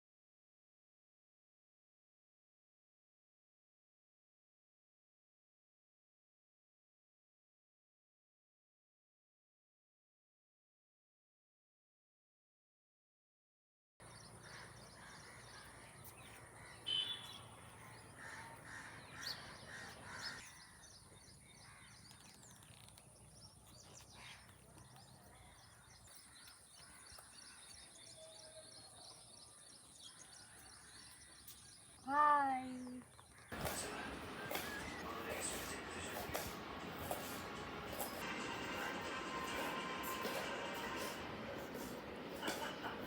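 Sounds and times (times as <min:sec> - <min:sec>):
birds chirping: 0:14.0 - 0:43.0.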